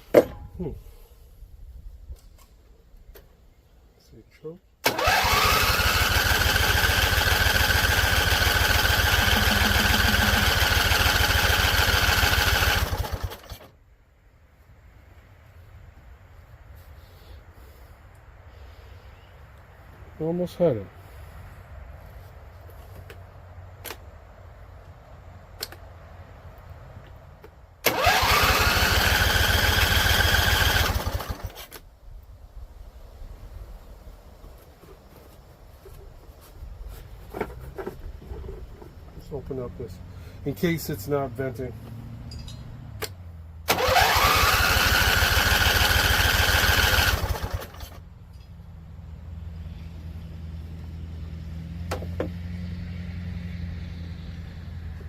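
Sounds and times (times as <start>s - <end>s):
electric starter cranking engine: 4.8s - 13.7s, 27.8s - 31.8s, 43.6s - 48.0s
click: 25.6s - 25.8s.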